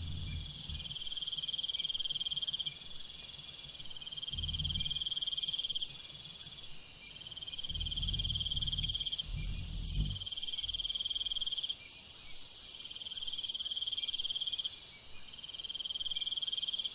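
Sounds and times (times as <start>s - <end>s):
soft low rumble: 0.0s - 1.3s, 4.3s - 5.4s, 7.6s - 11.4s
insect chorus with pulsing trill: 0.0s - 16.9s.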